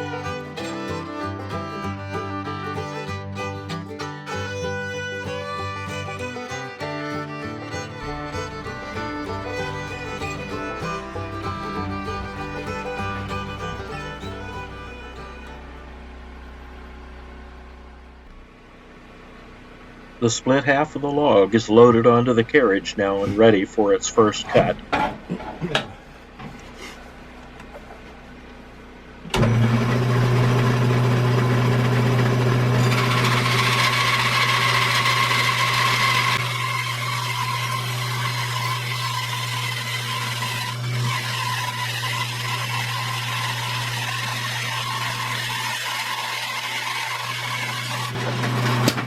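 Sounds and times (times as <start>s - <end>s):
bandsaw sawing wood: 0.0s - 15.7s, 30.0s - 49.0s.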